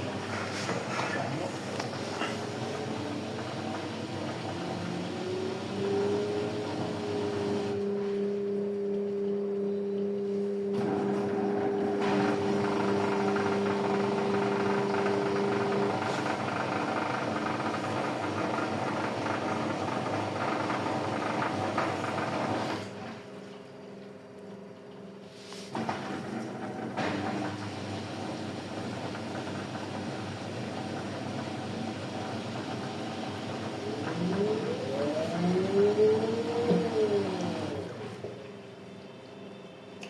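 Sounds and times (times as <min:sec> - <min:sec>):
motor whine: 0:00.0 - 0:17.4, 0:32.5 - 0:40.0
washing machine spinning: 0:00.0 - 0:40.0.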